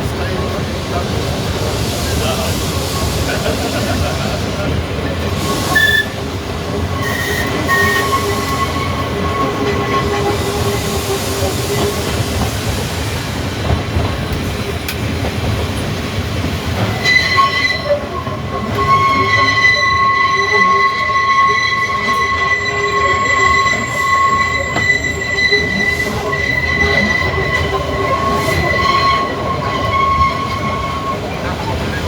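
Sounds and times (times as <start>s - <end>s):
tramcar running on rails: 0.0s - 32.0s
high-pitched wheel squeal: 6.8s - 12.2s, 17.0s - 31.9s.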